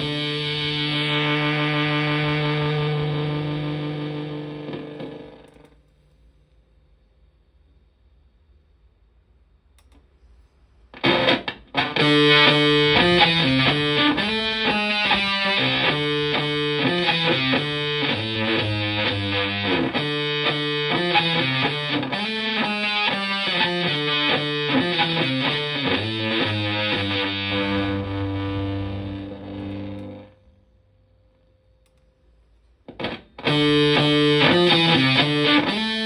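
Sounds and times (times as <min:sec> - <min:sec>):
fuzzy distorted electric guitar riff: 0:00.0 - 0:05.7, 0:10.9 - 0:30.6, 0:32.8 - 0:36.0.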